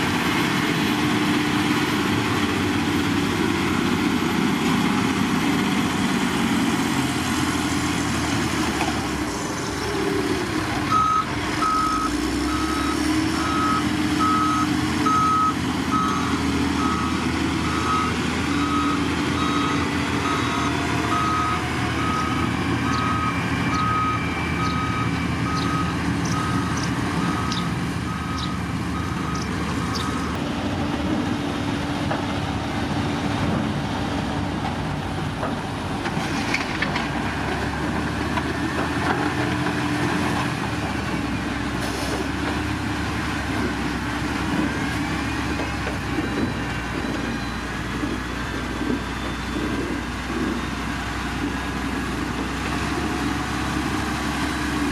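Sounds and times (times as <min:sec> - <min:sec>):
diesel engine running: 0:00.0 - 0:54.9
reversing alarm beeping: 0:10.9 - 0:30.4, 0:44.6 - 0:51.5.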